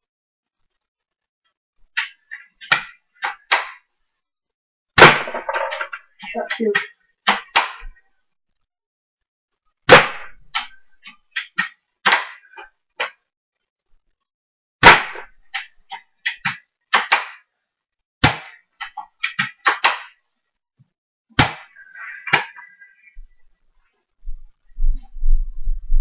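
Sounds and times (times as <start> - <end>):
airsoft rifle shots: 5.0 - 5.8, 9.9 - 10.7, 14.8 - 15.4.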